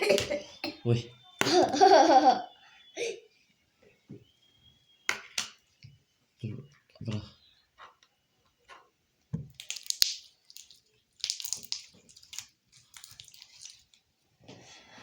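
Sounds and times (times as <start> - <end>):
slime squelching: 9.5 - 14.1.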